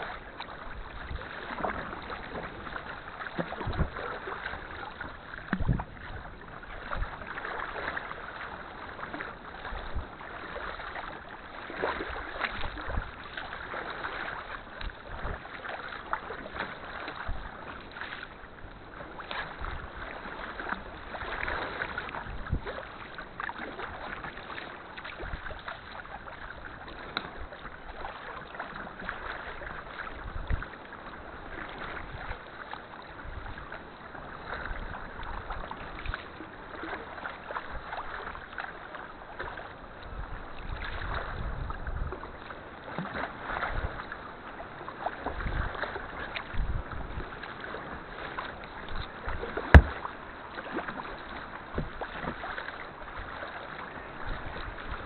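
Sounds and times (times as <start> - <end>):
paddle strokes splashing: 0.0 - 55.0
water sloshing around boat: 0.0 - 55.0
sharp knock: 49.7 - 49.9.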